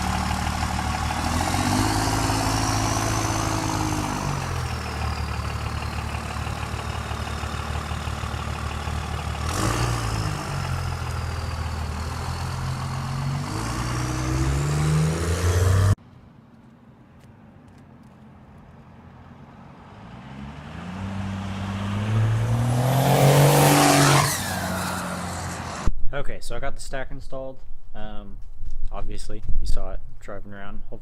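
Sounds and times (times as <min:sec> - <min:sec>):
diesel pickup engine accelerating: 0:00.0 - 0:16.0, 0:19.0 - 0:25.9.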